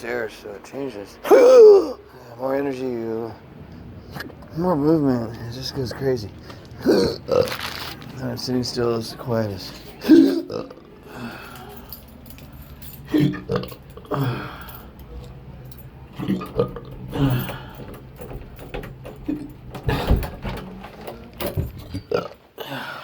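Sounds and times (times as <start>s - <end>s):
man hiccuping: 1.2s - 2.1s, 6.8s - 7.6s, 10.0s - 10.8s.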